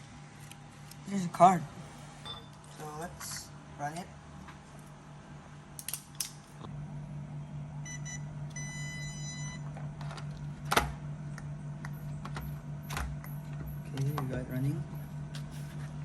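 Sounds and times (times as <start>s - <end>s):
low hum: 6.4s - 16.0s.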